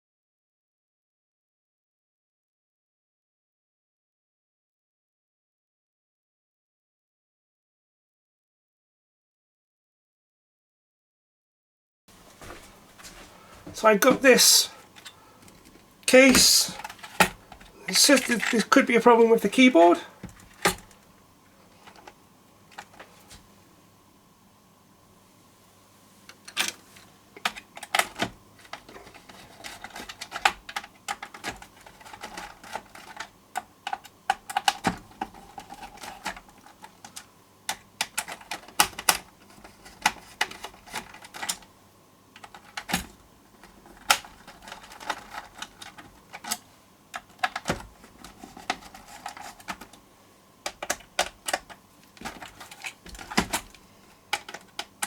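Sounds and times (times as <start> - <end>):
hard plastic clicks and clacks: 27.4 - 41.7, 42.4 - 50.0, 50.6 - 55.0.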